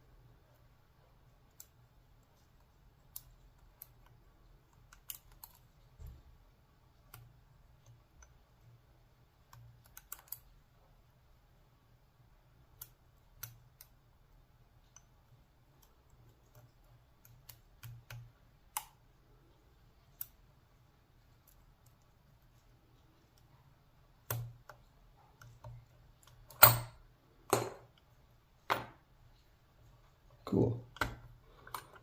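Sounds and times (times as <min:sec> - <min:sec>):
lock pick clicks: 0:26.2 - 0:28.0
padlock metallic clacks: 0:26.2 - 0:28.0.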